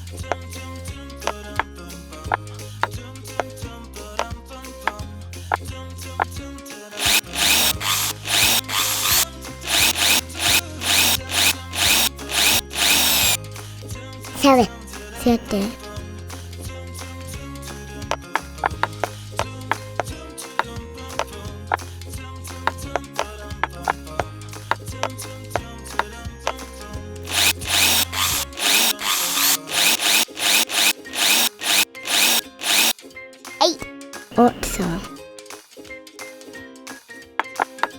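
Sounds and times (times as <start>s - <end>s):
toy power drill whirring: 6.9s - 13.4s, 14.4s - 15.8s, 27.2s - 33.0s, 34.4s - 35.2s.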